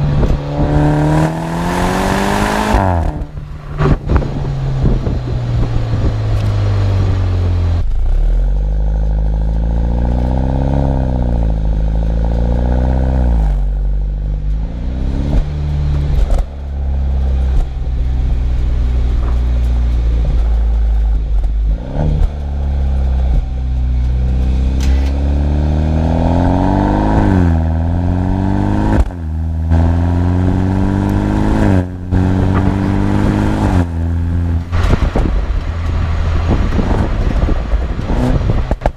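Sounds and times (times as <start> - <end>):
car engine revving through gears: 0.0 - 38.9
exhaust pops and cracks: 2.7 - 7.1, 13.4 - 25.3, 27.1 - 29.9, 31.8 - 38.9.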